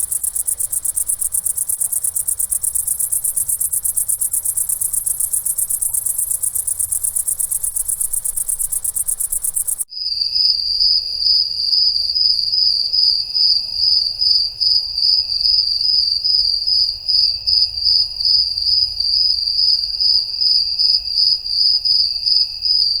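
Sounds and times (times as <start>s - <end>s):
cricket trilling: 0.0s - 9.9s
high pulsing insect buzz: 0.0s - 9.9s.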